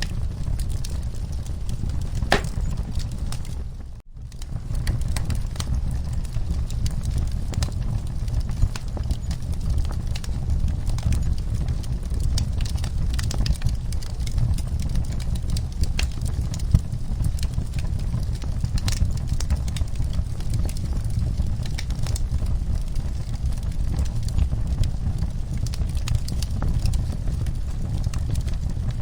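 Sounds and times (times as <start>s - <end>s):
low rumble of burning logs: 0.0s - 29.0s
fire snaps and pops: 0.1s - 3.5s, 4.3s - 29.0s
wood fire crackling: 0.1s - 29.0s.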